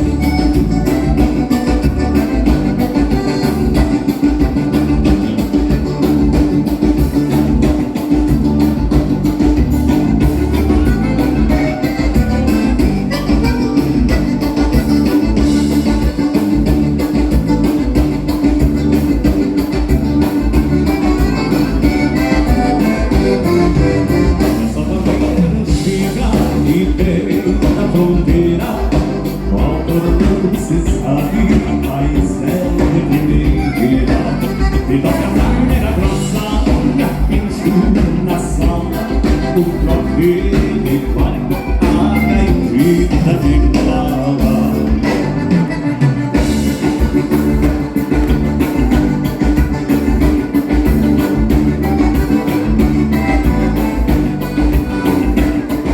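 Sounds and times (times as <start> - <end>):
held instrument notes: 0.0 - 26.8
bass and drum pulse: 0.0 - 55.9
live band playing dance rhythm: 0.0 - 55.9.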